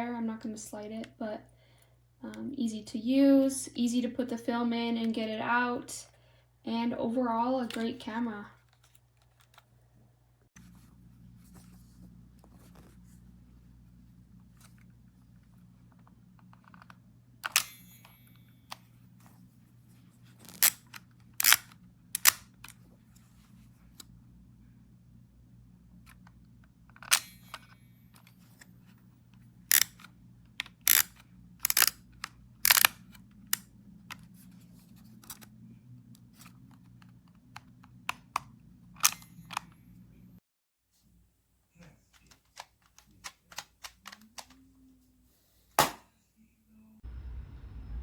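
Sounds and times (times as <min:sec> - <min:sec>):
plastic camera clicks: 0:16.6 - 0:17.8, 0:20.4 - 0:22.8, 0:27.0 - 0:28.7, 0:29.7 - 0:34.3, 0:36.2 - 0:39.8.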